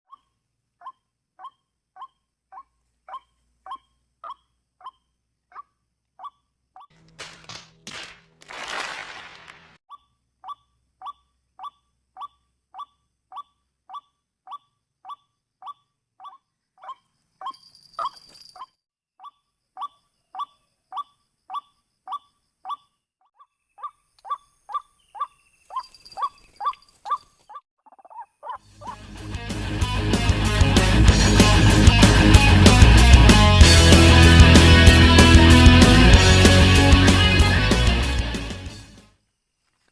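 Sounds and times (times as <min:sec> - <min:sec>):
waterhen calling: 0:09.9 - 0:18.1, 0:19.2 - 0:29.0.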